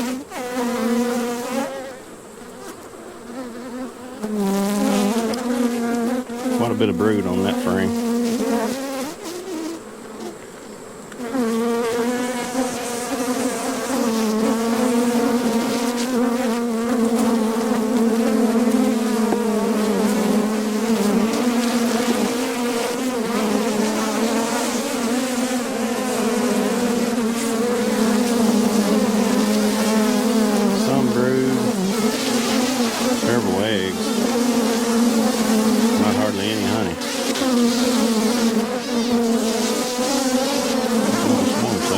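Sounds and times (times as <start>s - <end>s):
honeybees buzzing: 0.0s - 41.9s.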